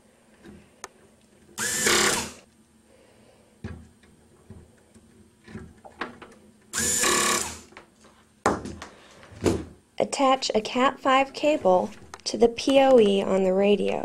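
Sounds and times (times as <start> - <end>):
power screwdriver driving screws: 1.6 - 2.4, 6.8 - 7.7.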